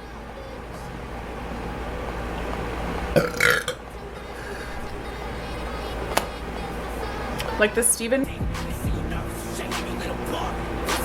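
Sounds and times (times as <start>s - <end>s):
woman burping: 3.2s - 3.8s.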